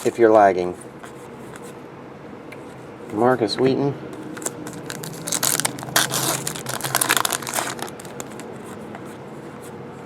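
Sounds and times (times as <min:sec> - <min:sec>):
trading cards and packaging rustling: 0:00.0 - 0:00.4, 0:04.2 - 0:09.1.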